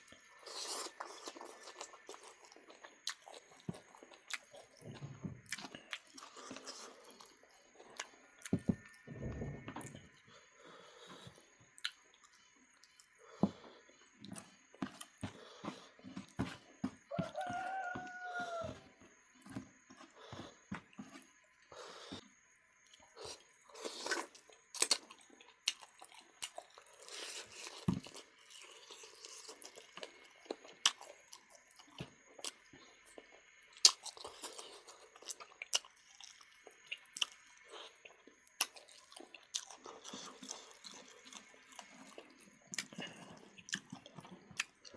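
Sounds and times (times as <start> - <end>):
chewing and biting meat: 23.2 - 32.6, 33.2 - 44.9.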